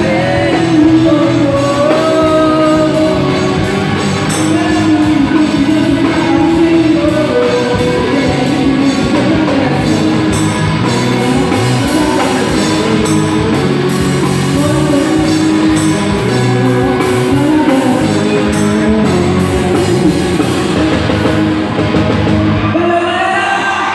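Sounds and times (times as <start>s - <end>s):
person singing: 0.0s - 21.4s, 22.6s - 23.9s
rock band playing: 0.0s - 23.9s.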